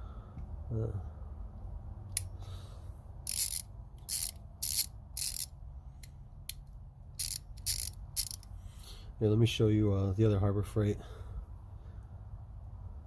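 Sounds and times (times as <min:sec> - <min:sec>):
ratchet pawl clicking: 0:03.2 - 0:08.5.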